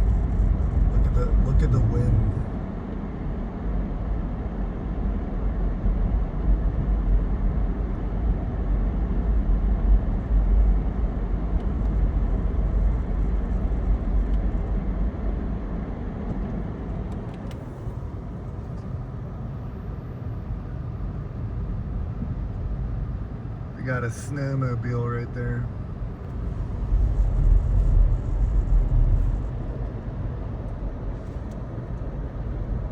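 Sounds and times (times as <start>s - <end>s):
wind buffeting microphone: 26.1s - 31.8s.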